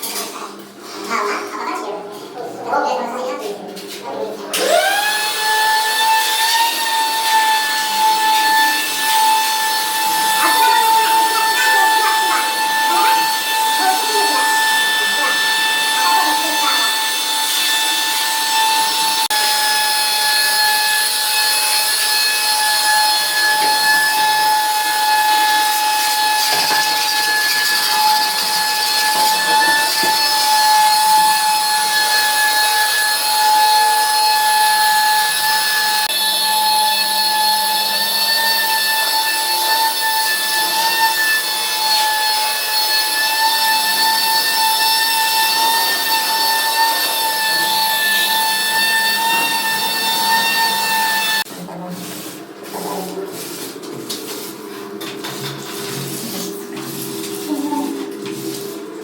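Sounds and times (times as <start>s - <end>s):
power tool motor whine: 4.5s - 51.5s.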